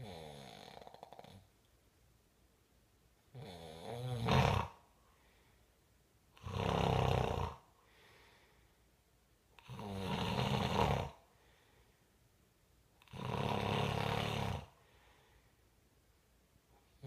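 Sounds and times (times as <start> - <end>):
person snoring: 0.0 - 1.5, 3.3 - 4.8, 6.4 - 8.1, 9.6 - 11.2, 13.0 - 14.8.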